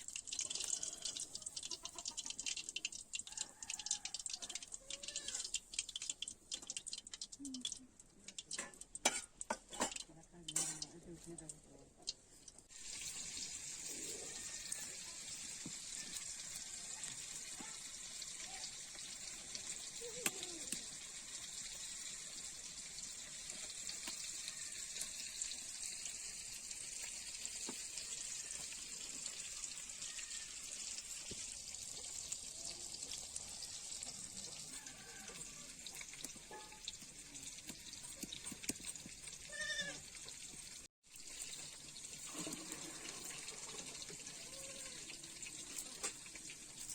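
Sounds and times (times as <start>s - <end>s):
curry sizzling in a pan: 0.0s - 46.9s
animal bleat: 1.7s - 2.2s, 30.0s - 30.6s, 39.5s - 40.0s.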